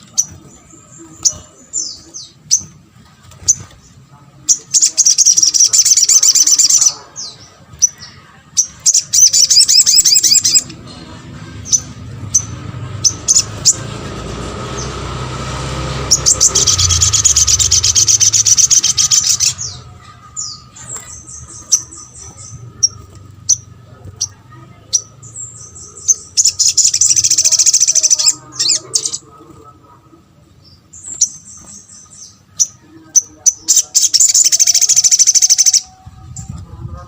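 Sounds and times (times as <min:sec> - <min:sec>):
bird chattering trills: 0:04.4 - 0:15.2, 0:15.8 - 0:29.8, 0:30.7 - 0:35.9
low rushing noise: 0:10.6 - 0:24.5.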